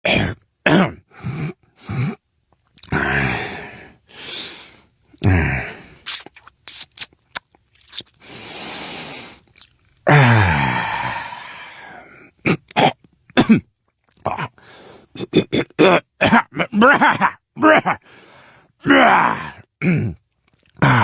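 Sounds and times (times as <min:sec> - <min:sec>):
man grunting and groaning: 0:02.8 - 0:03.8, 0:05.2 - 0:05.9, 0:10.1 - 0:11.6, 0:15.2 - 0:18.0, 0:18.8 - 0:20.2, 0:20.8 - 0:21.0.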